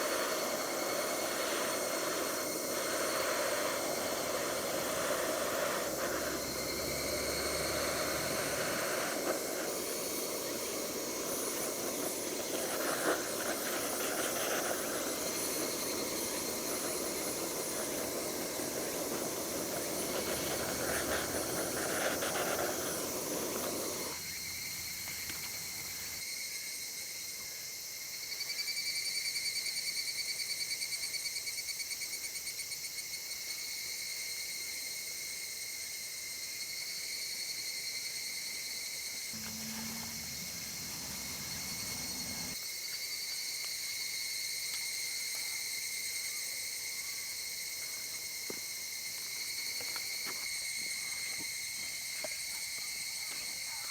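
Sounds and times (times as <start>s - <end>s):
rushing hiss: 0.0s - 26.2s, 39.4s - 42.6s
insects buzzing drone: 0.0s - 30.1s, 37.0s - 53.9s
brief low hum: 39.4s - 42.6s.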